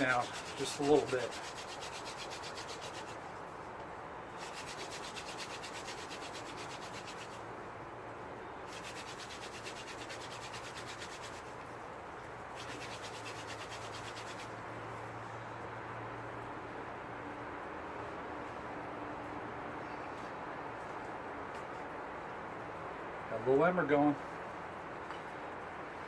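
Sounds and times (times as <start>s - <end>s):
hand drill rubbing on wood: 0.0s - 3.3s, 4.4s - 7.4s, 8.7s - 11.6s, 12.5s - 14.6s.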